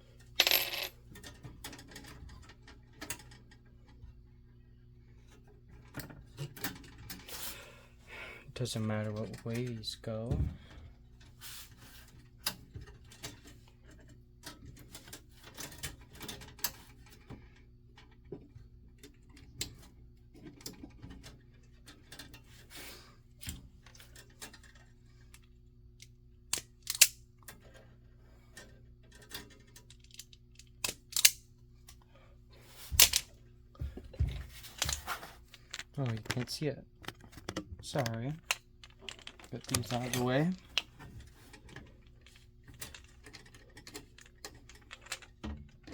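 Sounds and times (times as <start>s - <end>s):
clicks taps and rustles of wires: 5.2s - 7.3s, 12.1s - 22.5s, 28.5s - 32.1s, 32.9s - 45.9s.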